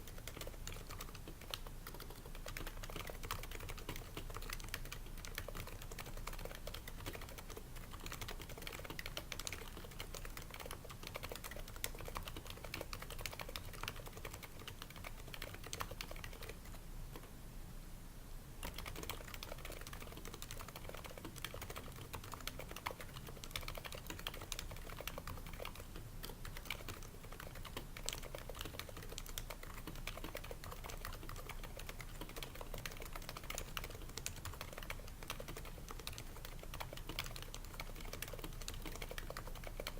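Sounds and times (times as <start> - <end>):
soft keyboard typing: 0.0 - 17.3, 18.6 - 39.9.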